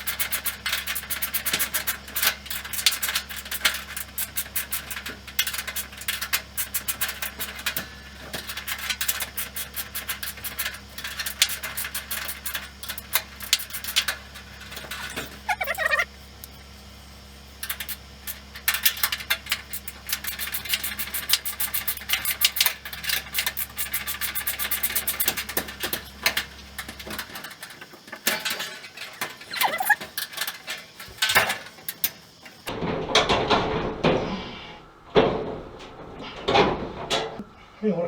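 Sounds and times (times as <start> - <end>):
steady low hum: 0.0 - 38.0
metal clinking and rattling: 25.1 - 37.5
handling clatter: 25.2 - 37.5.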